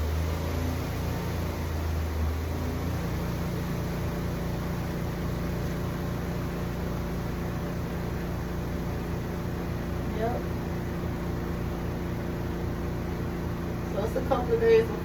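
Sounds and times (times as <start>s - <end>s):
spin-dryer motor humming: 0.0s - 15.0s.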